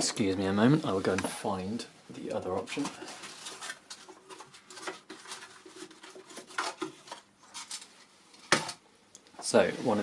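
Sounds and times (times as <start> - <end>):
small objects clicking and rustling: 2.7 - 8.8.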